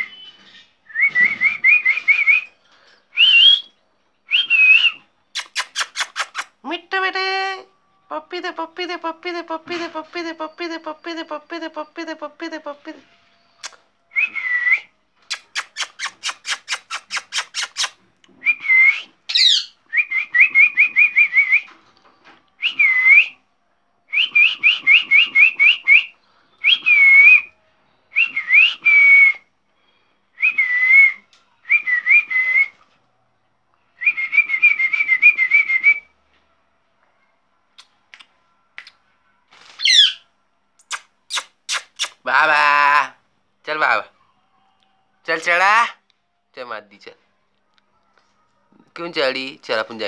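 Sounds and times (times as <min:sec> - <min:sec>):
parrot whistling: 0:14.2 - 0:21.7, 0:39.8 - 0:40.2.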